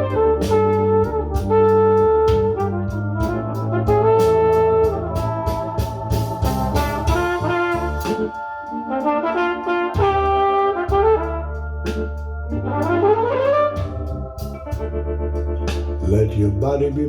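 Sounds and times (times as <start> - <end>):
blues song with horn bass and drums: 0.0 - 17.0.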